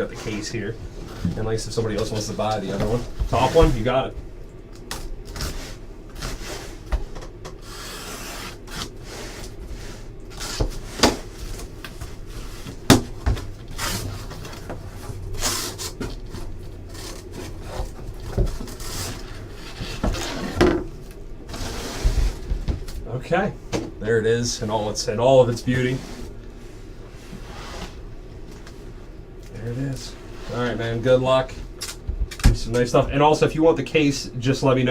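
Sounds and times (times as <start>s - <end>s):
packaging rubbing and scraping: 2.0s - 3.9s, 7.6s - 12.9s, 13.6s - 20.7s.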